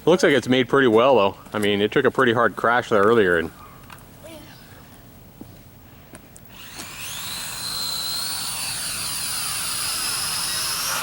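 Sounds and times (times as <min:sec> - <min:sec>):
quadcopter motors buzzing: 0:06.5 - 0:11.0.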